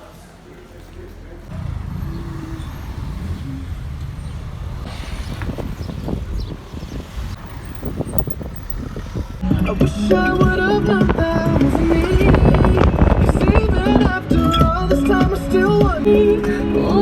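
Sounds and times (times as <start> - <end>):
faint indistinct voices: 0.0 - 2.8
engine rumbling: 0.4 - 16.1.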